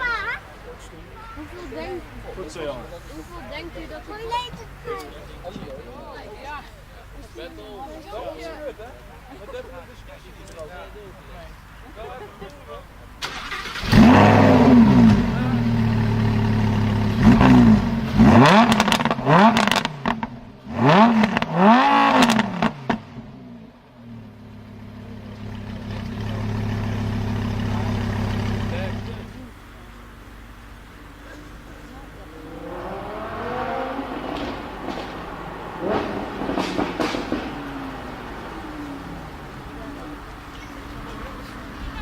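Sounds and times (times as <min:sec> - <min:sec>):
exhaust crackles popping: 0:12.4 - 0:23.4, 0:24.0 - 0:42.0
car engine revving: 0:13.2 - 0:42.0.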